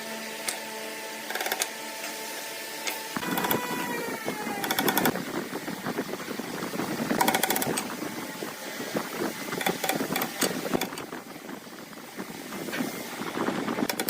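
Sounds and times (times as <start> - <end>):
loud clicking bursts: 1.3 - 1.7, 3.2 - 3.7, 4.5 - 5.2, 7.1 - 7.9, 9.6 - 11.1, 13.8 - 14.0
power tool rattling: 3.2 - 5.2, 7.1 - 7.9, 9.6 - 11.1, 13.8 - 14.0.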